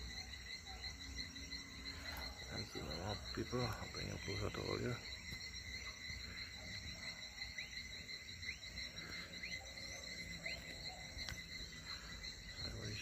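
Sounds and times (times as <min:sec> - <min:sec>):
crickets chirring: 0:00.0 - 0:13.0.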